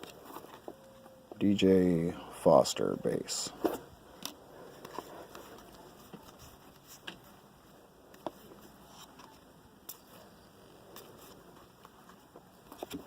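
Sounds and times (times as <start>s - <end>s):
trading cards rustling: 3.1s - 13.0s.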